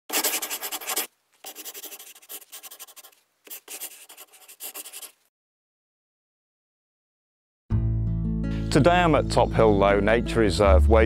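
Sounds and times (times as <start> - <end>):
rapid scratching strokes: 0.1 - 5.2.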